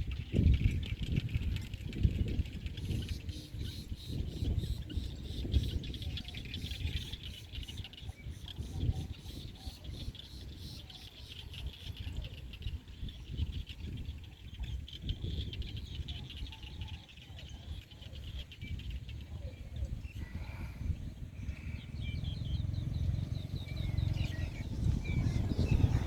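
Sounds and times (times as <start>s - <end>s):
low rumble: 20.0s - 26.0s.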